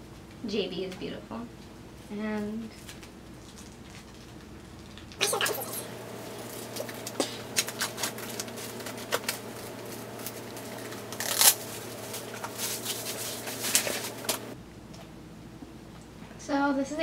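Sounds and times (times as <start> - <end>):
paper packaging rustling: 5.2 - 14.6
packaging scraping: 5.5 - 14.6.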